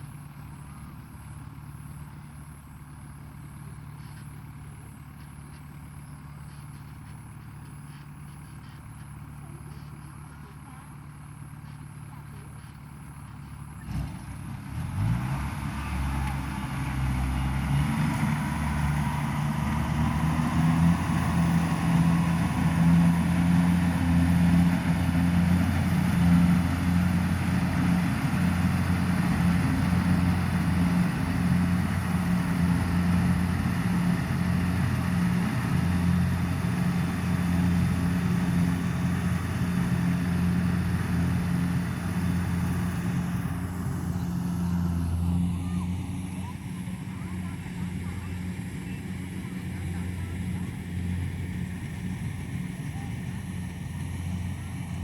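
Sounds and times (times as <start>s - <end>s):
engine revving: 13.8s - 55.0s.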